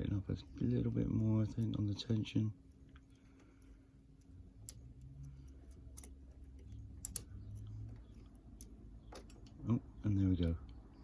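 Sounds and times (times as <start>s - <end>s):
metallic clicks of lock picking: 7.0s - 7.3s.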